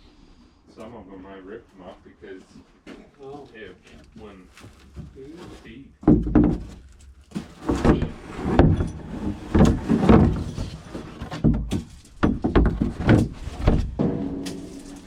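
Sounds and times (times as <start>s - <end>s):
knocks and thuds: 6.0s - 14.7s.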